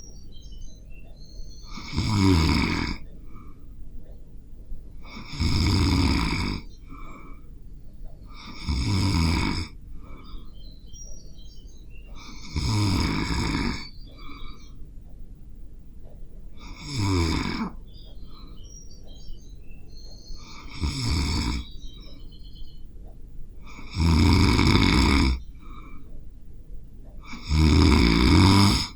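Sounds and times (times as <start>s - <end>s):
quiet breathing: 0.9s - 28.9s
person snoring: 1.7s - 3.1s, 5.0s - 7.3s, 8.4s - 9.8s, 12.2s - 14.6s, 16.6s - 17.8s, 20.4s - 21.7s, 23.6s - 26.0s, 27.3s - 28.9s.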